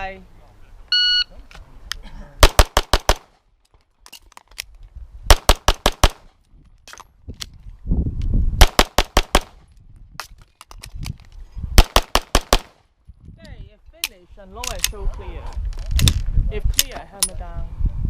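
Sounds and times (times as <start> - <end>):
pistol shots: 2.4 - 3.3, 5.3 - 6.3, 11.8 - 12.8.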